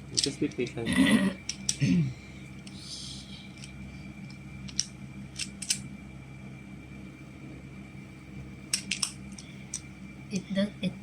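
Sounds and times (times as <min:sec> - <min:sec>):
steady low hum: 0:00.0 - 0:11.0
plastic tiles clicking together: 0:04.6 - 0:05.8, 0:08.7 - 0:09.9.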